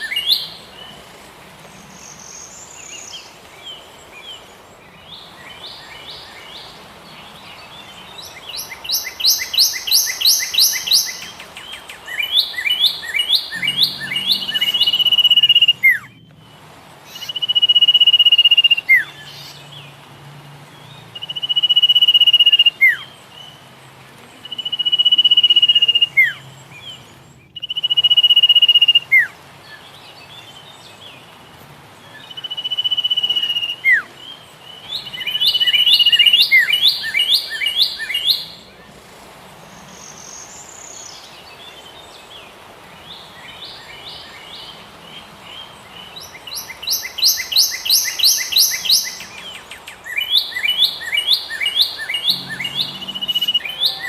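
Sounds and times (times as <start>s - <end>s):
songbirds singing: 0.0s - 54.0s.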